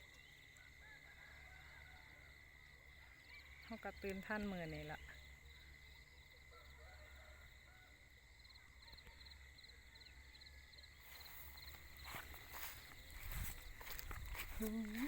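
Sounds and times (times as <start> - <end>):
insects chirping: 2.2 - 15.0.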